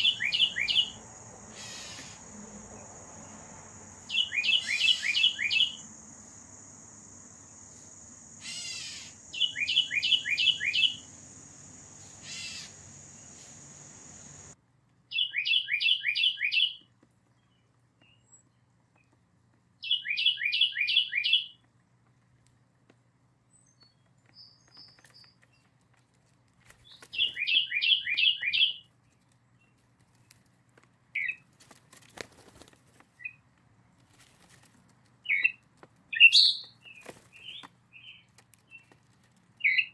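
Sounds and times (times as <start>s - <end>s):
high insect-like buzz: 0.0s - 14.6s
songbird singing whistled notes: 0.0s - 16.8s, 19.8s - 21.6s, 26.8s - 28.8s, 35.3s - 39.0s, 39.6s - 39.9s.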